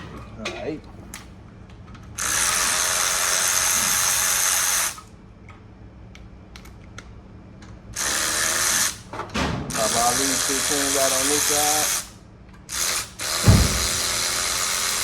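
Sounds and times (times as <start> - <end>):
cordless power tool running: 12.7 - 15.0.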